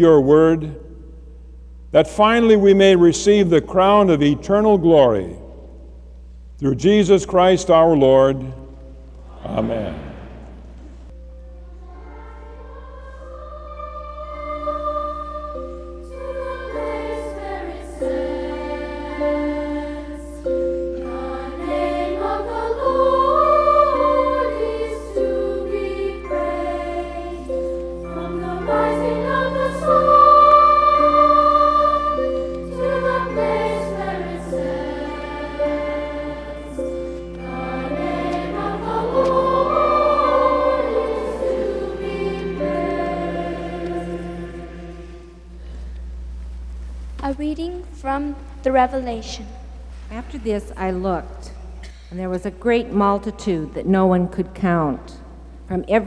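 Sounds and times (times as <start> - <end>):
choir singing sacred piece: 2.0 - 6.0, 6.6 - 46.1.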